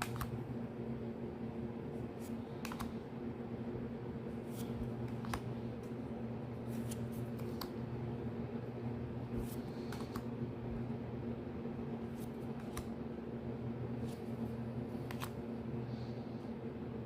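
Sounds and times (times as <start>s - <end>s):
trading cards sliding and clicking: 0.0s - 0.4s, 2.1s - 3.0s, 4.3s - 6.0s, 6.6s - 7.8s, 9.2s - 10.3s, 12.0s - 13.0s, 13.9s - 15.4s
steady low hum: 0.0s - 17.0s.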